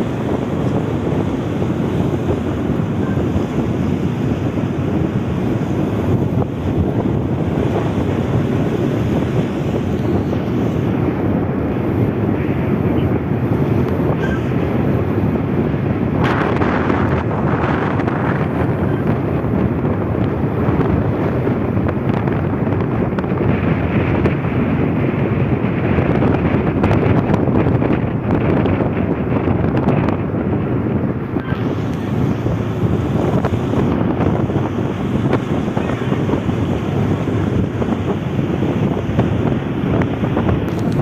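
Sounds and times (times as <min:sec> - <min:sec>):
strong wind buffeting microphone: 0:00.0 - 0:41.0.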